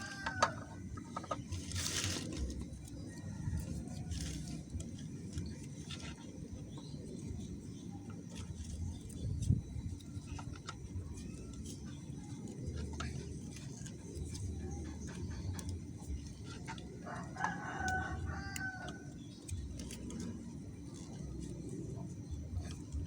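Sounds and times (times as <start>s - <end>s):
rooster crowing: 0.0s - 0.8s, 17.0s - 19.1s
low background rumble: 0.0s - 23.0s.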